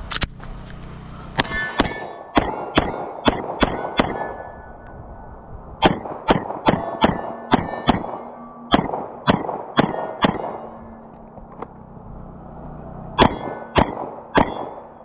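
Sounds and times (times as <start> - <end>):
steel plates ringing: 1.3 - 15.0
pistol shots: 1.4 - 4.7, 5.8 - 11.7, 13.2 - 15.0.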